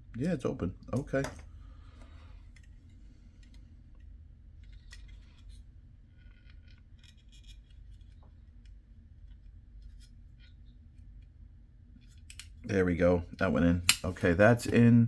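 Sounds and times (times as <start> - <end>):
plastic parts clicking and scraping: 0.9 - 10.5.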